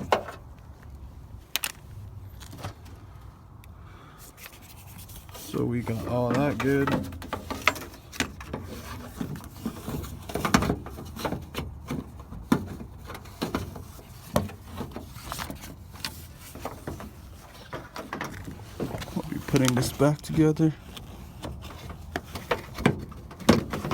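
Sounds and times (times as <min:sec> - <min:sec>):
hand tools clicking and knocking: 0:05.8 - 0:23.9.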